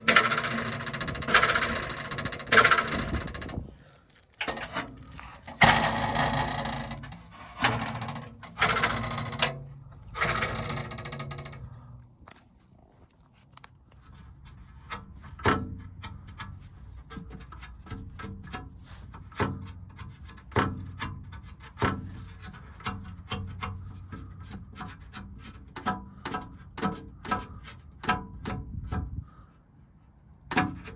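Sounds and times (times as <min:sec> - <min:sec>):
thin metal plate rattling: 0:00.0 - 0:03.8, 0:04.4 - 0:11.9.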